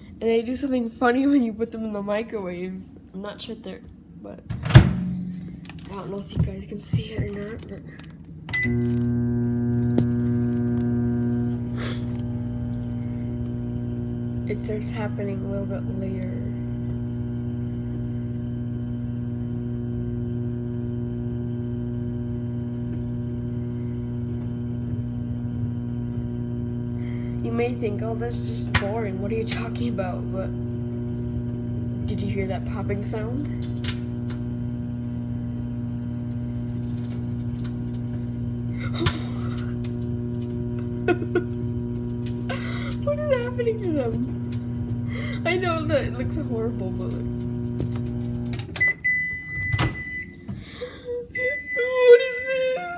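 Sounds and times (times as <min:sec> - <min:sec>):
microwave oven humming: 0:04.5 - 0:52.9.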